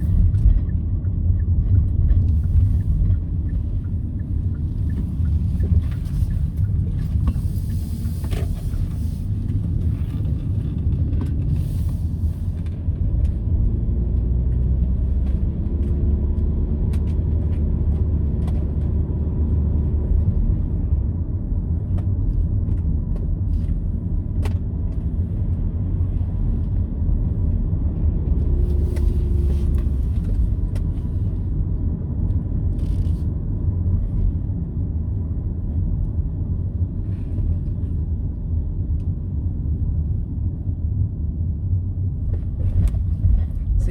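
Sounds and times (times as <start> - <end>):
car cabin road and engine rumble: 0.0 - 43.9.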